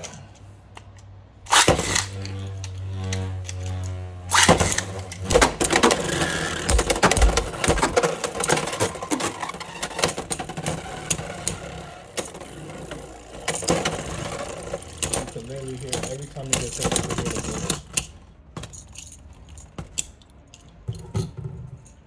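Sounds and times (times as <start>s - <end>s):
spinning tops whirring: 1.5s - 17.9s.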